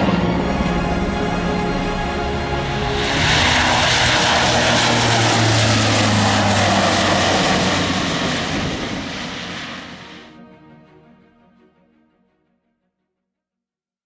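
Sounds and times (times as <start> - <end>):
propeller plane flying past: 0.0 - 10.3.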